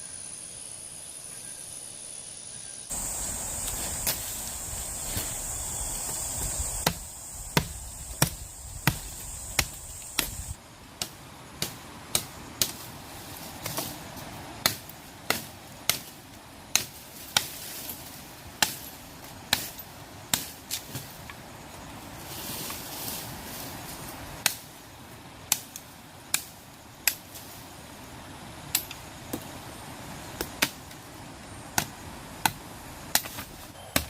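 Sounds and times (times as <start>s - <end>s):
steady high hiss: 0.0s - 33.8s
hand tool chopping strikes: 6.8s - 12.8s, 31.8s - 34.0s.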